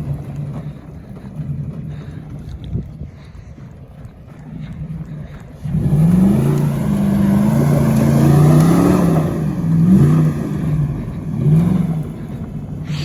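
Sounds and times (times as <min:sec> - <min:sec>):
car engine revving hard: 0:05.6 - 0:13.0.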